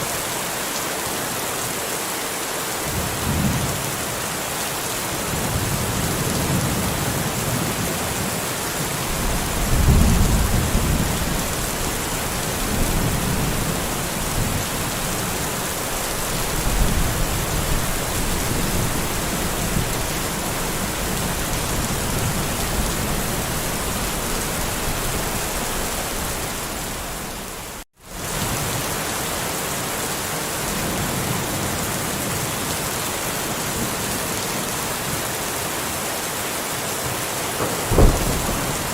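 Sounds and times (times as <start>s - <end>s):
steady rain: 0.0s - 38.9s
low rolling thunder: 5.3s - 27.6s, 37.6s - 38.9s.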